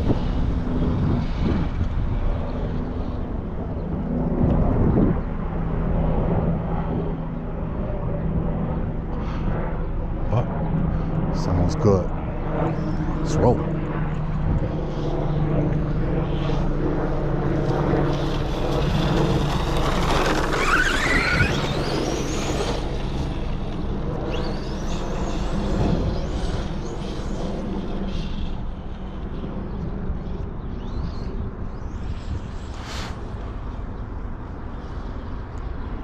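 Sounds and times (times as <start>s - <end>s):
electric motor whining: 16.3s - 29.3s.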